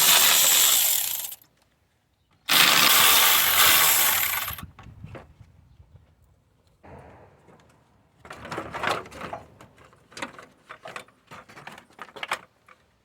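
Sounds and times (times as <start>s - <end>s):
tools and car parts clattering: 0.0s - 1.4s.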